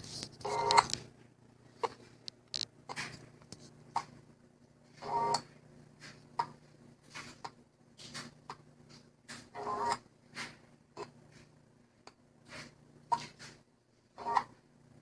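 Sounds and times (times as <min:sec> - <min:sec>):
laptop clicks and crackles: 0:00.0 - 0:01.1.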